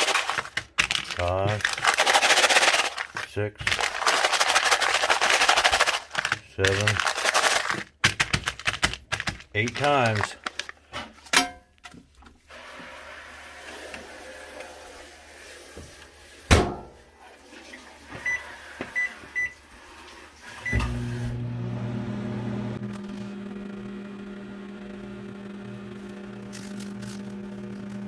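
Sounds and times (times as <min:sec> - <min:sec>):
microwave oven humming: 0:20.6 - 0:28.0.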